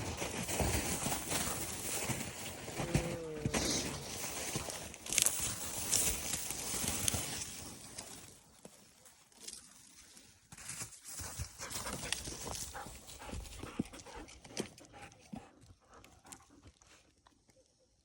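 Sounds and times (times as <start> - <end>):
dog panting: 11.6 - 17.0.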